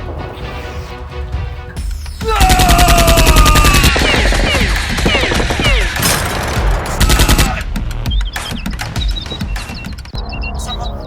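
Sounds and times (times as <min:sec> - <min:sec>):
automatic gunfire: 0:02.5 - 0:07.6.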